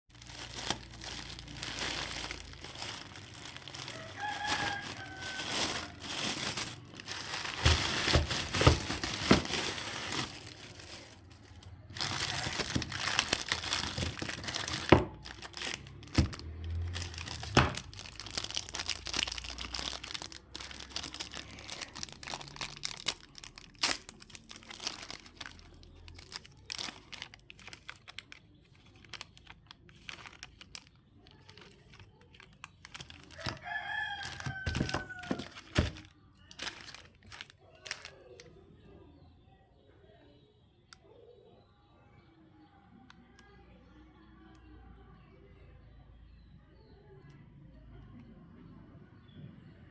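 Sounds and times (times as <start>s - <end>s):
rustling and crinkling handling: 0.1s - 38.6s.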